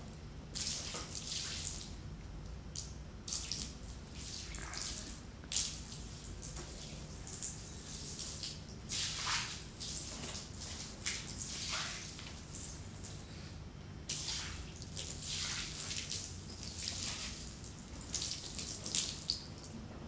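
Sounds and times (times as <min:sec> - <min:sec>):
water splashing: 0:14.1 - 0:19.7.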